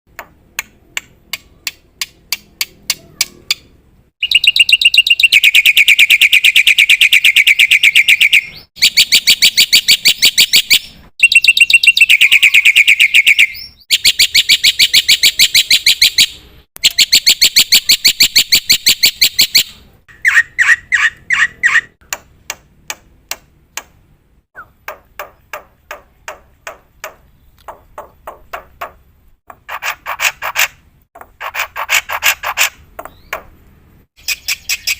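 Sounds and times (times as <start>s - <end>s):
bird singing with fast trills: 2.9s - 22.0s, 24.5s - 29.0s, 33.0s - 33.6s, 34.2s - 34.9s.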